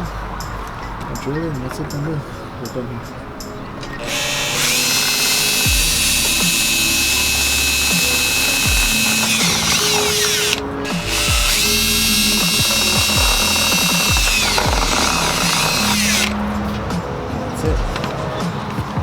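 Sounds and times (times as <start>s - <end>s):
deep sliding bass notes: 4.1s - 18.0s.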